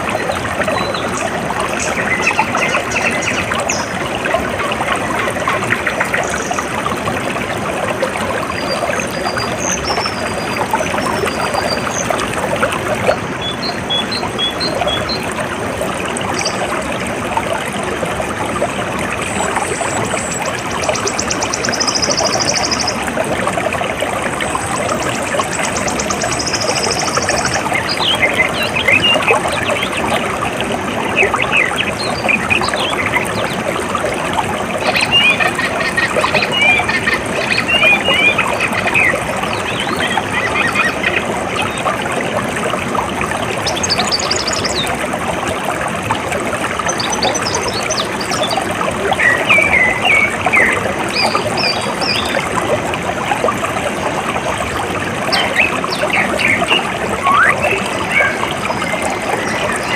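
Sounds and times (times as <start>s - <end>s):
water trickling: 0.0s - 59.9s
birds chirping: 34.8s - 41.8s, 55.3s - 59.9s.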